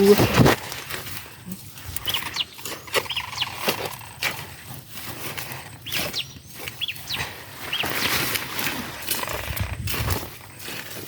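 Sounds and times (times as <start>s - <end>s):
rustling of leafy plants: 0.0s - 11.0s
bird chirps: 2.0s - 4.2s, 5.8s - 8.2s.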